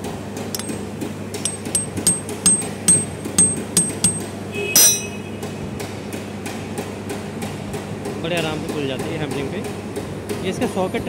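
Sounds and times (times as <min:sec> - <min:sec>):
hammer tapping metal screws: 0:00.6 - 0:00.8, 0:01.4 - 0:05.2
loud metal clang: 0:00.6 - 0:00.8, 0:01.4 - 0:05.4.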